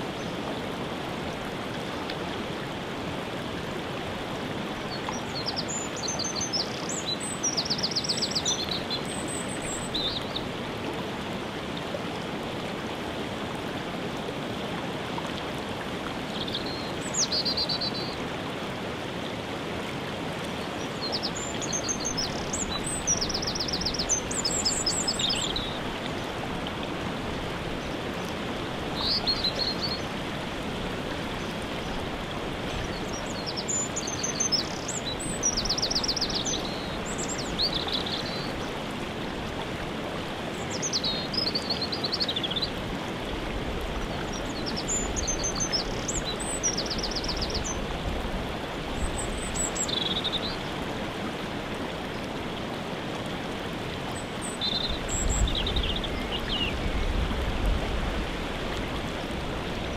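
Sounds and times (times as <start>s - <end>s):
waterfall rushing: 0.0s - 59.9s
songbirds chirping and trilling: 20.6s - 26.0s, 43.9s - 47.9s, 54.2s - 57.7s.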